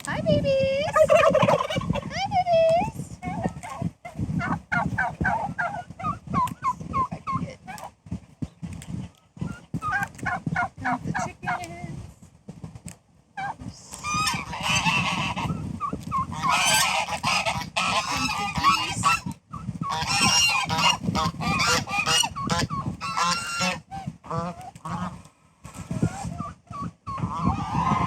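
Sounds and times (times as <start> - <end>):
geese honking: 13.4 - 15.6, 16.2 - 19.3, 19.9 - 26.4, 27.2 - 28.0.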